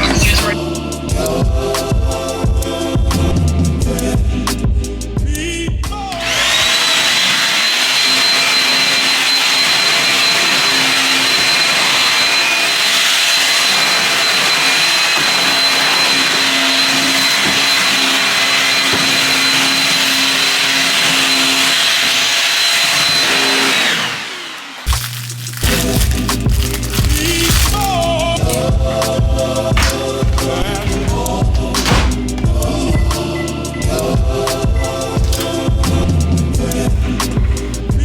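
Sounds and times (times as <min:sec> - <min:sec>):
appliance motor whining and humming: 0:06.1 - 0:38.0.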